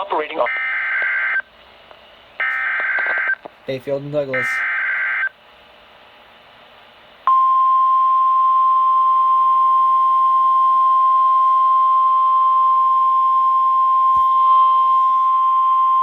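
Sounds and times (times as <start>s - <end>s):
steady high alarm tone: 7.3s - 16.0s.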